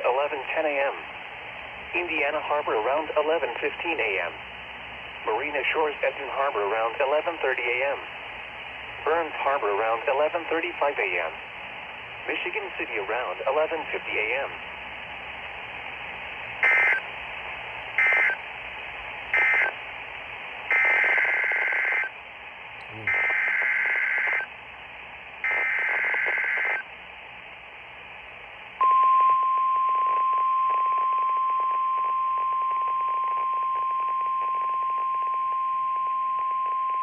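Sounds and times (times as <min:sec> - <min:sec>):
screeching data bursts: 0:16.6 - 0:17.0, 0:18.0 - 0:18.4, 0:19.4 - 0:19.8, 0:20.7 - 0:22.1, 0:22.9 - 0:24.5, 0:25.5 - 0:26.8
steady warning alarm tone: 0:16.6 - 0:17.0, 0:18.0 - 0:18.4, 0:19.4 - 0:19.7, 0:20.7 - 0:22.1, 0:23.0 - 0:24.5, 0:25.4 - 0:26.8.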